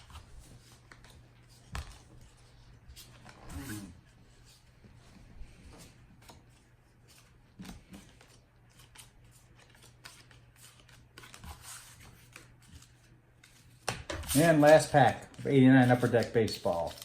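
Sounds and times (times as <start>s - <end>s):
low electrical hum: 0.0s - 17.0s
cards clicking and rustling: 6.2s - 17.0s.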